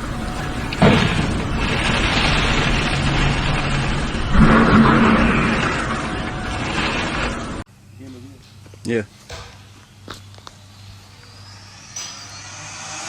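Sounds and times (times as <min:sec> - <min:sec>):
windmill breaking apart rushing: 0:00.0 - 0:07.6
windmill crashes: 0:00.0 - 0:07.6.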